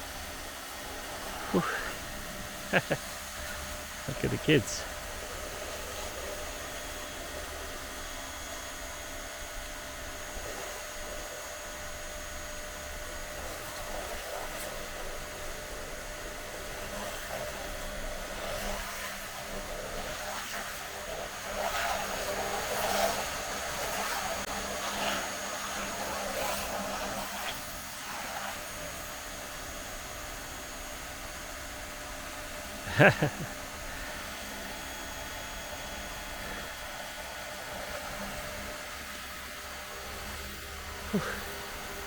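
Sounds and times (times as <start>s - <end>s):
hissing water spray: 16.4s - 30.4s.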